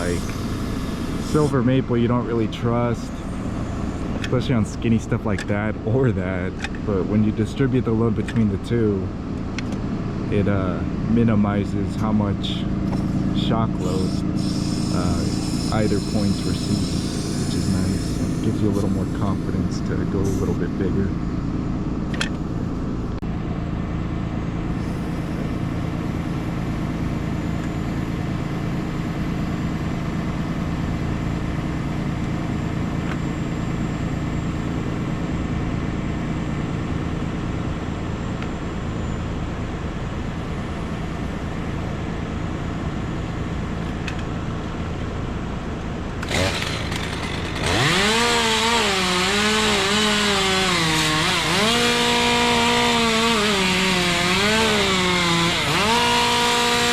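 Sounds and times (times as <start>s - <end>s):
chainsaw idling: 0.0s - 1.8s, 12.8s - 20.6s, 46.2s - 56.9s
chainsaw cutting wood: 13.8s - 19.4s, 46.2s - 56.9s.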